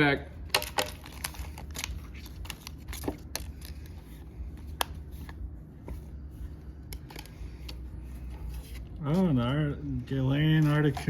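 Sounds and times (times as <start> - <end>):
cards being handled: 0.5 - 11.0
foil wrapper crinkling: 0.6 - 3.8.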